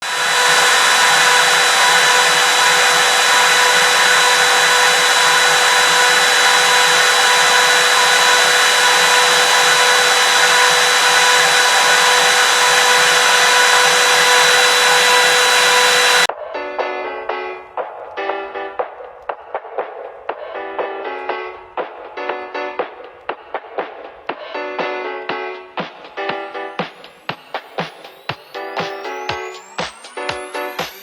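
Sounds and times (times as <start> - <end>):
router spindle whining: 0.0 - 16.3, 28.1 - 31.0.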